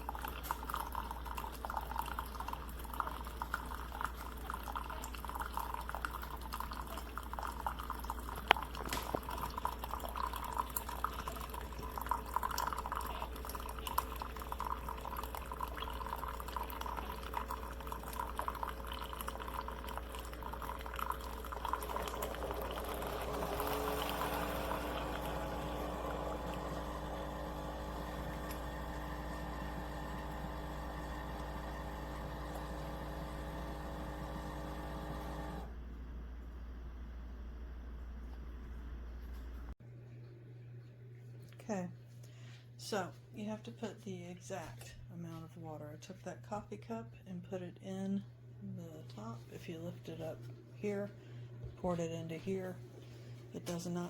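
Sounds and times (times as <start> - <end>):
water pouring into reservoir: 0.0 - 35.7.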